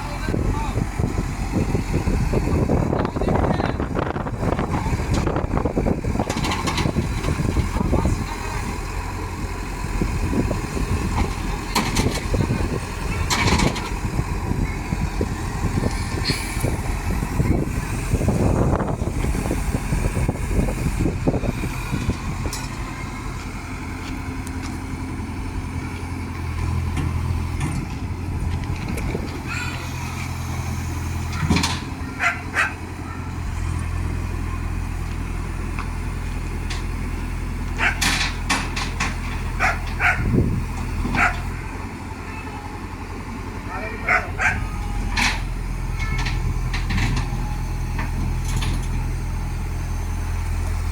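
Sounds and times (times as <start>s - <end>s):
excavator diesel engine running: 0.0s - 50.9s
dog barking: 32.1s - 33.3s, 37.8s - 38.0s, 39.6s - 40.3s, 41.2s - 41.5s, 43.7s - 44.7s.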